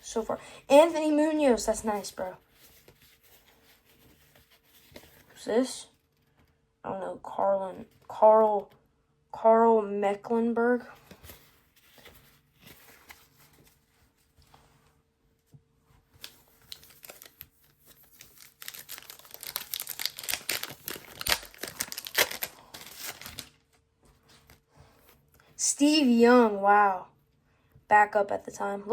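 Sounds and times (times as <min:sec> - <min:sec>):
paper and card crinkling: 0:01.5 - 0:06.5, 0:10.9 - 0:14.7, 0:16.0 - 0:25.5.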